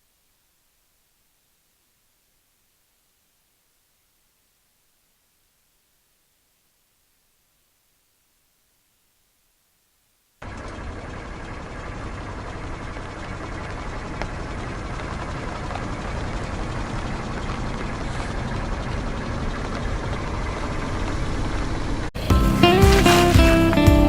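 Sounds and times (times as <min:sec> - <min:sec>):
car engine rumbling: 0:10.4 - 0:24.0.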